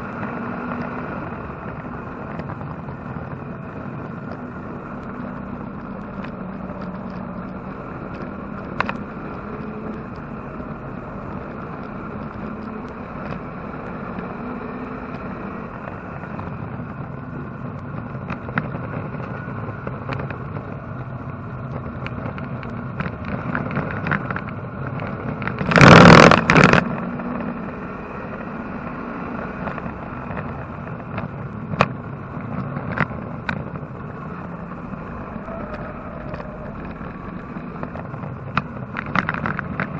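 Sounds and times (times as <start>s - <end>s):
race car engine running hard: 0.0s - 39.9s
loud burst of noise: 25.7s - 26.8s.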